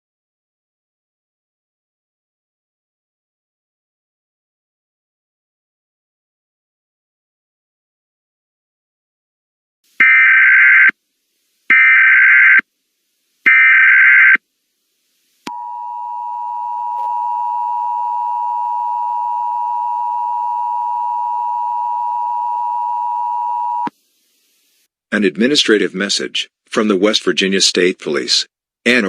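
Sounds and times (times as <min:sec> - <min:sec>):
two-tone attention signal: 0:15.5 - 0:23.9.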